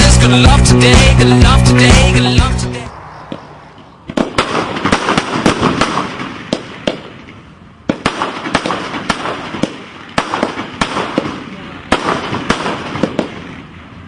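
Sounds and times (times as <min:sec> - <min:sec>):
fireworks crackling: 0:01.8 - 0:14.0
fireworks bangs: 0:02.8 - 0:14.0.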